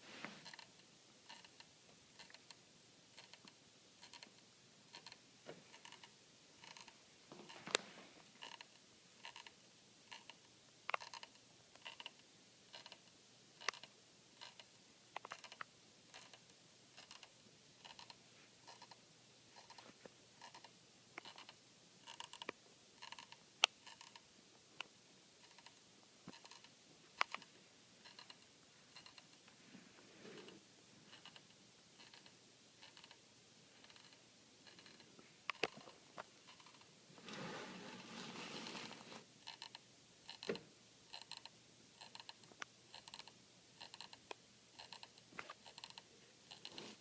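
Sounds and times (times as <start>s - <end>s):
faint scratchy clicking: 33.8s - 36.9s.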